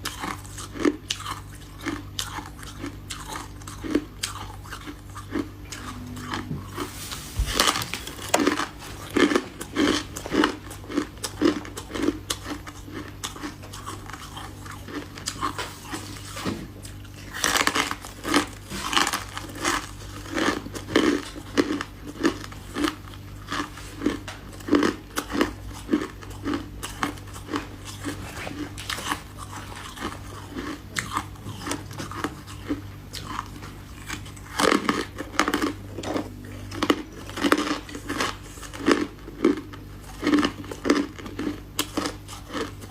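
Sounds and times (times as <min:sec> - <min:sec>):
crunching frost chunks: 0:05.3 - 0:35.8.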